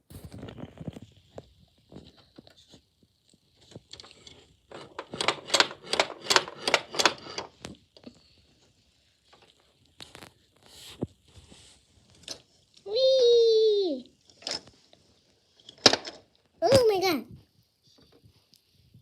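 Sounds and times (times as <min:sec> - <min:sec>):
plastic toys tapping and scraping: 0:00.2 - 0:08.3, 0:14.2 - 0:17.0.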